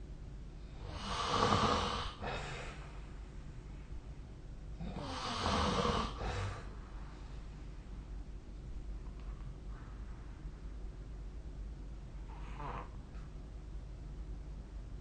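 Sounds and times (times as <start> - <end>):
person snoring: 0.8 - 2.6, 4.8 - 6.7.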